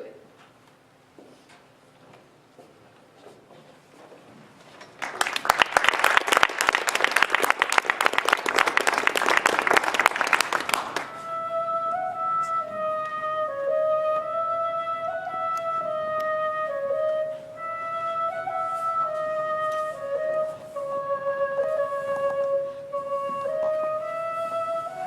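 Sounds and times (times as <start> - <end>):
audience applauding: 4.9 - 11.2
flute playing slow melody: 8.9 - 25.0.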